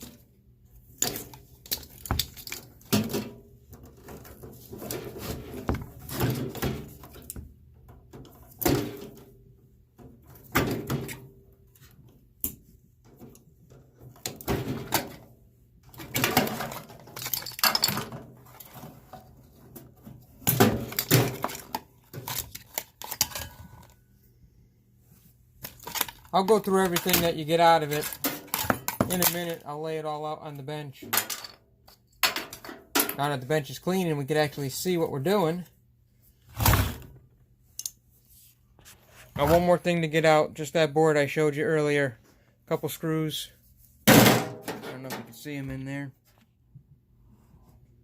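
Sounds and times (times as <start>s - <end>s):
metal parts clanking and knocking: 15.9s - 19.1s, 20.4s - 24.0s, 25.6s - 29.6s, 31.1s - 33.3s.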